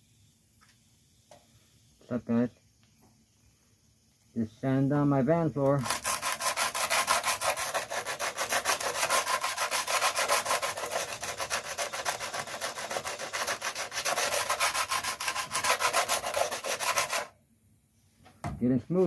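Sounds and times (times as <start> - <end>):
sandpaper rasping on floor: 5.7 - 17.4.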